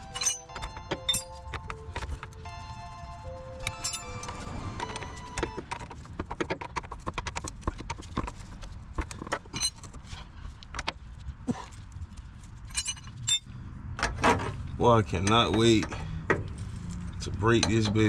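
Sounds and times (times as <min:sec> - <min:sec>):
hand tools clicking on metal: 0:00.0 - 0:02.4, 0:15.1 - 0:16.6.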